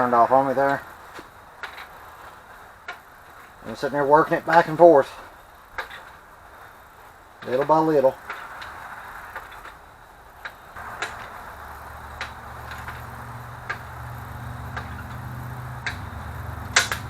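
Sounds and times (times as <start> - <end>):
hand tool metallic clicks and taps: 10.4 - 17.0
low machine hum: 10.6 - 17.0.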